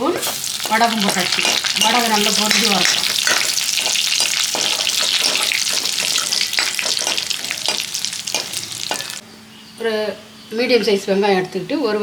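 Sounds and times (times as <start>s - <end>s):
seasoning sizzling in hot oil: 0.0s - 9.2s.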